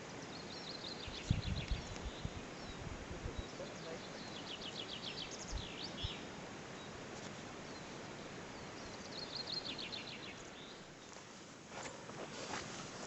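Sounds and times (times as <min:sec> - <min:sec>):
steady outdoor hiss: 0:00.0 - 0:13.0
songbird trilling: 0:00.2 - 0:07.0, 0:07.6 - 0:10.8.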